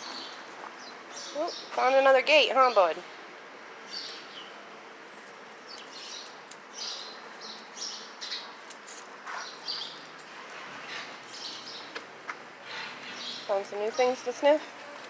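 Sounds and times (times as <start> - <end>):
small birds chirping: 0.0 - 3.1, 3.8 - 15.0.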